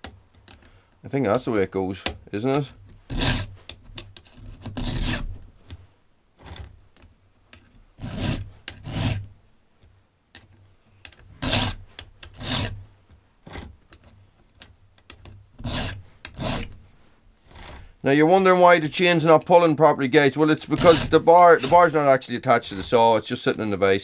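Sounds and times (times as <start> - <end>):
hand file rasping on chain: 2.6 - 5.5, 6.4 - 6.7, 8.0 - 9.3, 11.1 - 18.0, 20.4 - 23.7.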